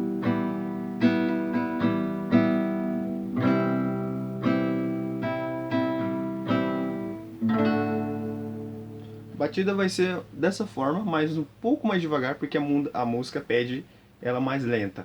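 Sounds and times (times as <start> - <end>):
acoustic guitar strumming: 0.0 - 10.7.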